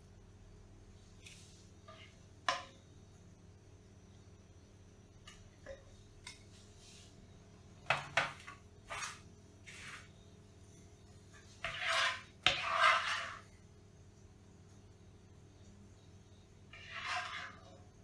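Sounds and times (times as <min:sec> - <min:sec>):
dishes scraping: 0:07.9 - 0:10.1, 0:11.4 - 0:13.5, 0:16.7 - 0:17.9.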